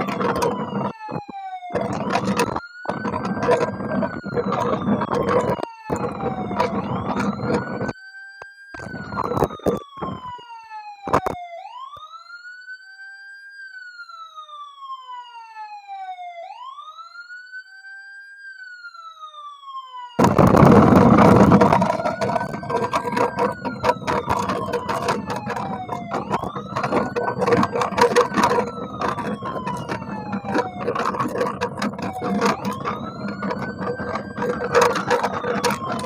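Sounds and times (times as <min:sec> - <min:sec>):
clattering and clicking: 0:00.0 - 0:07.9, 0:08.8 - 0:10.3, 0:20.2 - 0:36.0
electronic siren wailing: 0:00.0 - 0:12.4, 0:19.1 - 0:36.0.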